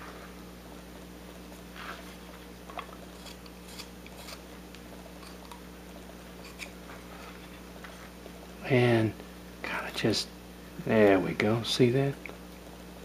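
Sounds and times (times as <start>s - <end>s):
steady low hum: 0.0s - 13.0s
knife cutting and scraping wood: 3.0s - 4.5s, 5.2s - 5.6s, 6.4s - 7.6s.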